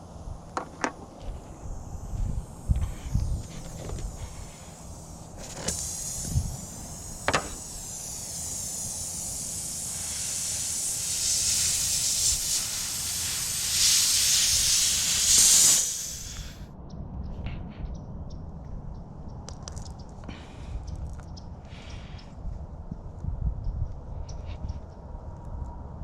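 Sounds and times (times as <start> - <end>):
air hissing from tire: 0.0 - 16.7, 20.3 - 20.9, 21.7 - 22.3.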